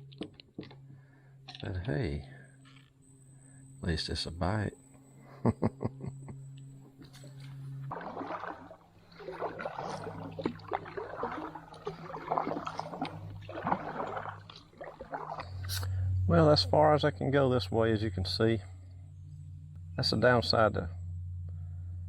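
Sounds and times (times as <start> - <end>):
paddle splashing water: 7.8 - 15.8.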